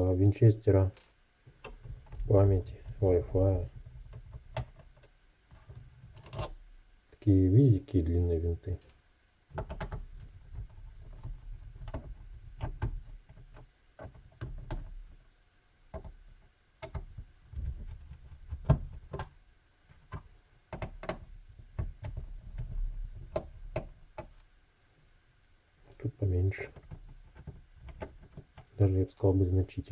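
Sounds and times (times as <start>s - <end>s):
clicks and taps on plastic case: 1.5s - 6.5s, 9.5s - 15.2s, 15.9s - 24.5s, 26.6s - 28.8s.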